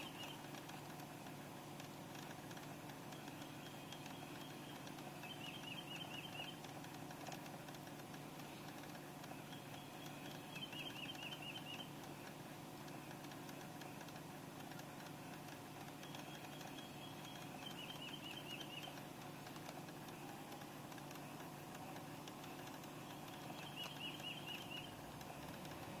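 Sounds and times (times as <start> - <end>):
faint rapid clicking: 0.0 - 26.0
van interior hum: 0.0 - 26.0.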